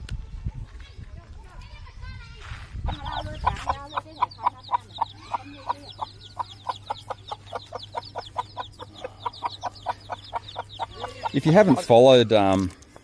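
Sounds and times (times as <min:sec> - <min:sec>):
steady low hum: 0:02.8 - 0:11.8
chickens clucking: 0:02.8 - 0:13.0.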